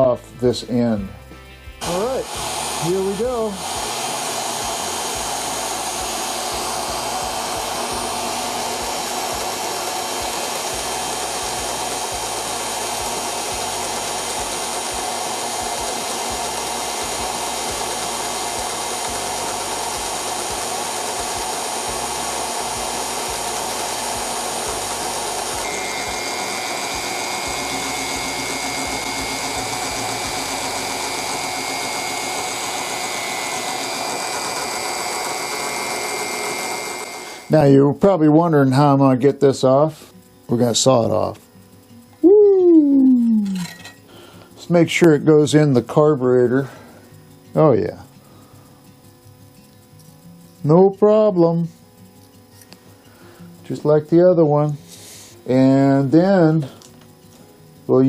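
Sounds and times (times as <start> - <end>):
electric drill motor whining: 1.8 - 37.6.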